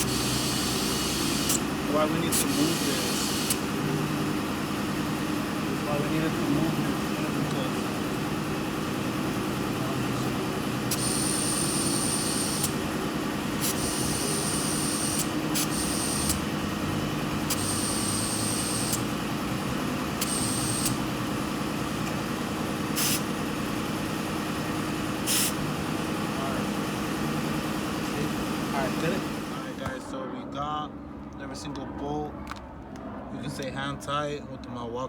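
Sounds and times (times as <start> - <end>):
cordless electric ratchet whining: 0.0 - 7.7, 10.7 - 29.7.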